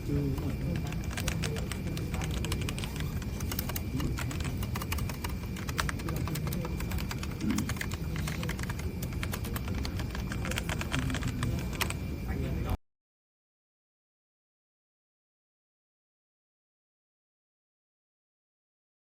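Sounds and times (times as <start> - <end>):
mechanical keyboard typing: 0.2 - 12.0.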